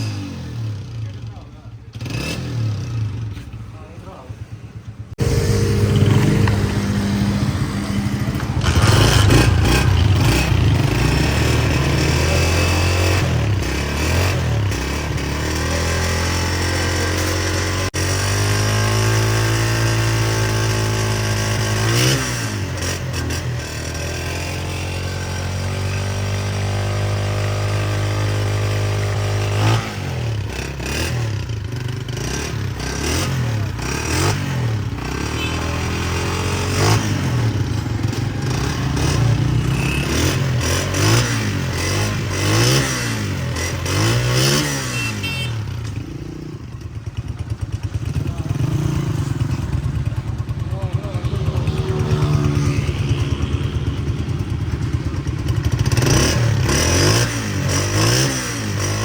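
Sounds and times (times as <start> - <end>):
motorcycle engine revving: 0.0 - 59.0
motorcycle engine idling: 2.7 - 12.4, 30.2 - 42.4, 45.0 - 57.7.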